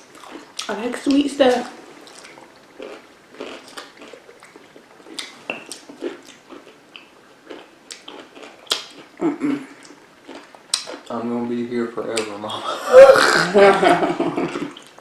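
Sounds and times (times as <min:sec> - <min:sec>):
wet crunchy chewing: 0:00.1 - 0:00.7, 0:01.5 - 0:11.1
mouth smacking: 0:03.6 - 0:07.1, 0:12.2 - 0:13.6.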